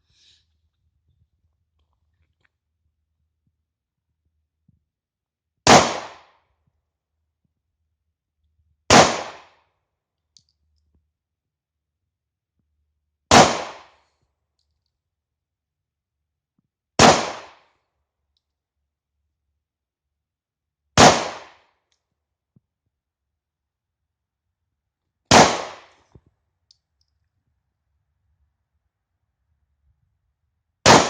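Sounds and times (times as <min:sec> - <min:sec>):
pistol shots: 0:05.6 - 0:06.3, 0:08.9 - 0:09.6, 0:13.3 - 0:14.0, 0:17.0 - 0:17.6, 0:21.0 - 0:21.6, 0:25.3 - 0:26.0.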